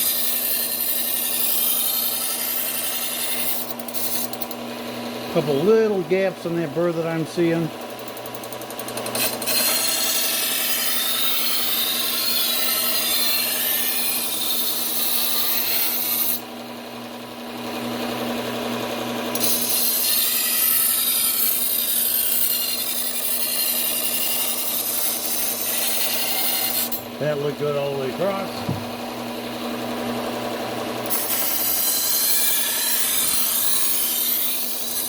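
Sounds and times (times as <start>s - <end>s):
belt sander motor hum: 0.0s - 35.0s
knife grinding on belt sander: 0.0s - 35.0s.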